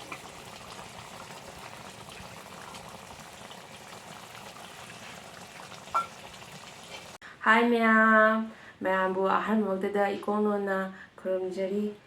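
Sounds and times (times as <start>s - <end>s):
fish curry bubbling in a pot: 0.0s - 7.2s.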